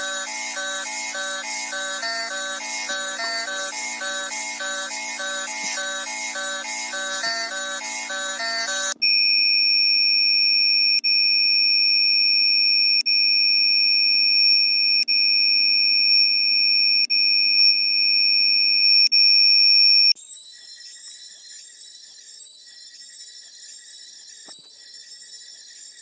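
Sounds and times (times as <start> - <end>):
high piercing alarm tones: 0.0 - 10.0.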